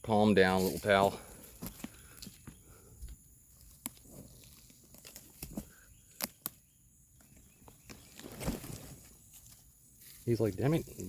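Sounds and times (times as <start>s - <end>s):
leaves rustling: 0.4s - 2.3s, 7.7s - 11.0s
twigs cracking and snapping: 3.5s - 9.6s.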